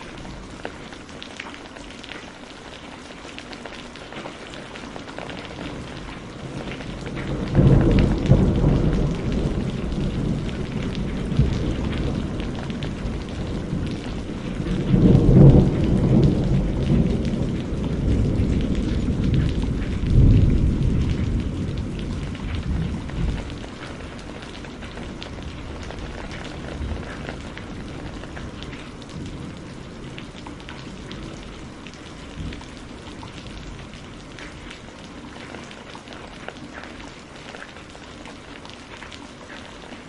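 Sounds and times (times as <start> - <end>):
steady rain falling: 0.0 - 40.0
rolling thunder: 5.3 - 34.1.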